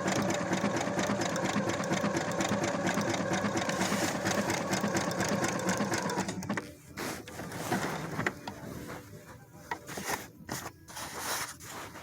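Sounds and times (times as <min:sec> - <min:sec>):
sewing machine stitching: 0:00.0 - 0:08.5.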